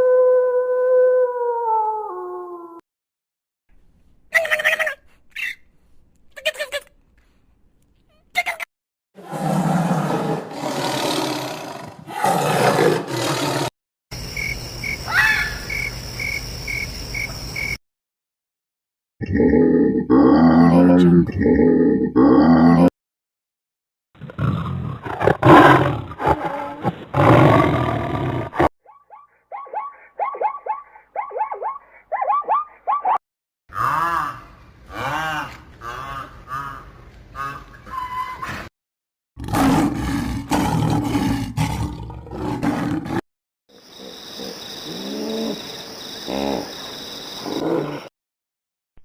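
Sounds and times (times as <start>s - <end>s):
animal roaring: 9.2s - 13.7s, 19.2s - 22.9s, 24.3s - 28.7s, 39.4s - 43.2s
animal yelping calls: 15.1s - 15.7s, 28.9s - 33.2s.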